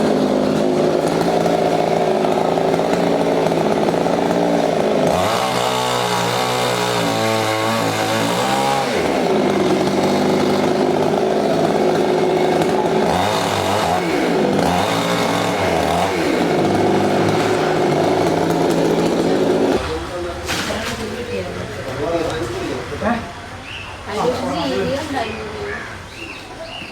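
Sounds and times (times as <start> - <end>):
chainsaw cutting wood: 0.0 - 20.0.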